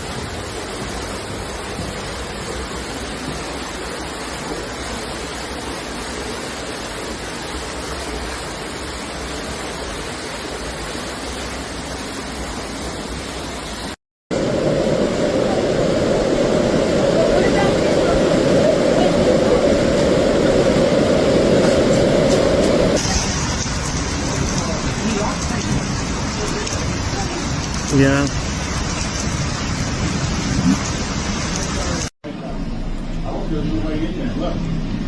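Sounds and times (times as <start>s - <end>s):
water rushing: 0.0s - 32.1s.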